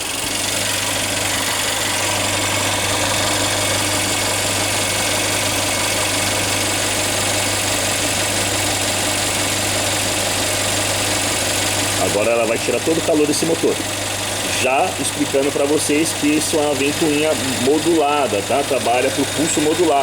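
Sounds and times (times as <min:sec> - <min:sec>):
car engine idling: 0:00.0 - 0:20.0
radiator fan rushing air: 0:00.0 - 0:20.0.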